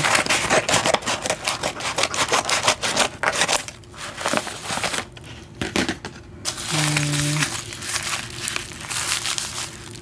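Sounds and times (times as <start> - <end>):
packaging crinkling with clicks: 6.5 - 10.0.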